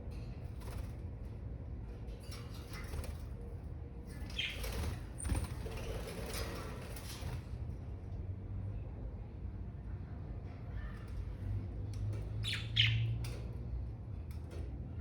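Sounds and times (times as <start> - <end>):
birds fluttering and rustling: 0.0 - 8.2, 10.4 - 15.0.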